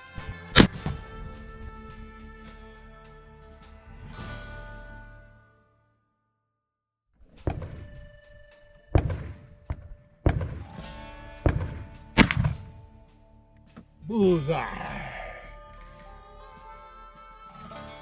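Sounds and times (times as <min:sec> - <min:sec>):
music with percussive hits: 0:00.0 - 0:04.9, 0:07.4 - 0:16.2.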